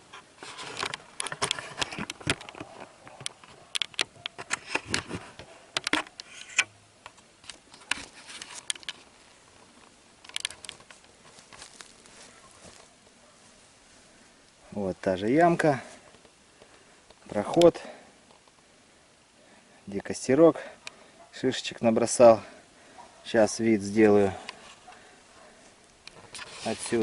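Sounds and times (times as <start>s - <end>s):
camera handling clicks and rubbing: 0.1s - 9.1s, 10.2s - 11.9s.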